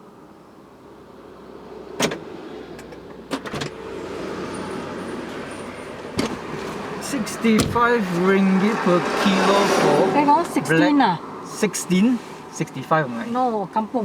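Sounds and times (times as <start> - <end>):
car interior road rush: 0.8 - 14.0.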